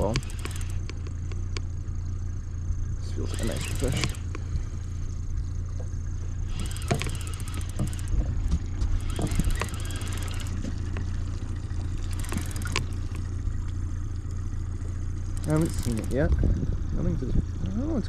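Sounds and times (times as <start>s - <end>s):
fishing reel clicking: 0.0s - 1.7s, 3.3s - 4.5s, 6.5s - 8.3s, 8.9s - 13.4s, 15.3s - 16.4s
boat motor droning: 0.0s - 18.0s.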